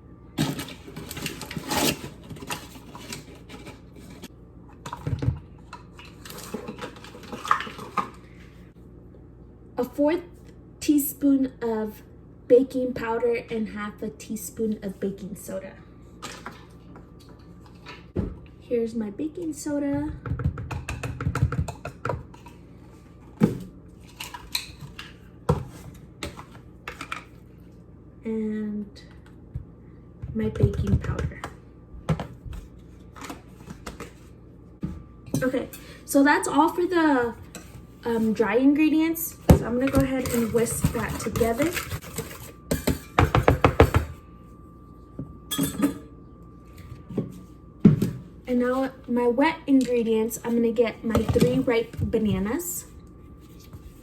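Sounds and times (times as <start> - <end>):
kitchen utensils clinking: 45.5 - 46.1.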